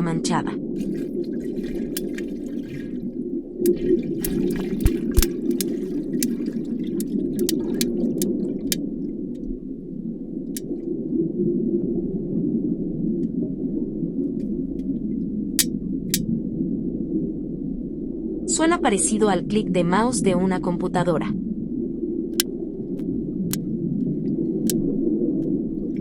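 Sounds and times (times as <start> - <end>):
shark clicking underwater: 0.8 - 9.5, 10.5 - 10.8, 15.6 - 16.3, 22.4 - 26.0.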